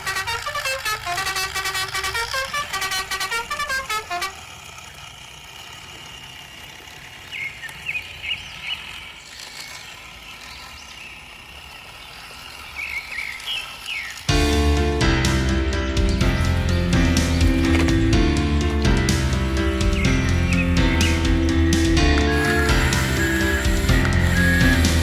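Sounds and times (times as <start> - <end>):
horn-like melody: 0.0 - 4.5, 14.3 - 25.0
steady hum: 5.9 - 25.0.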